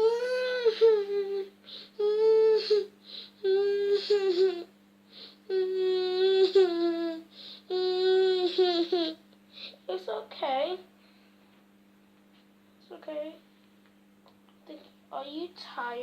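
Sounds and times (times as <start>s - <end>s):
person humming a lullaby: 0.0s - 9.2s.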